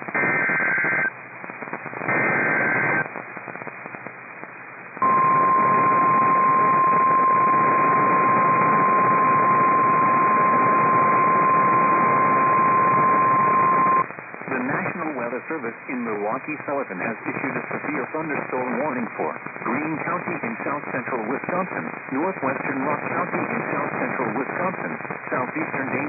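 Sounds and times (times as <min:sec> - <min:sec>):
radio hiss: 0:00.0 - 0:26.0
steady warning alarm tone: 0:05.0 - 0:14.0.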